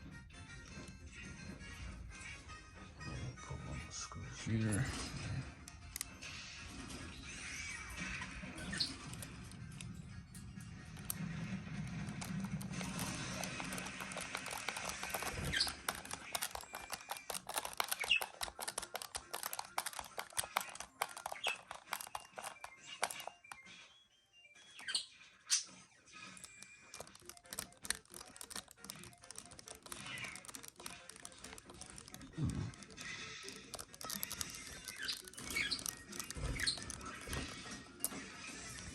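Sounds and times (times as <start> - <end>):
screwdriver clicks and taps: 12.9 - 23.3, 26.9 - 37.6
brief squeaks: 34.0 - 37.6.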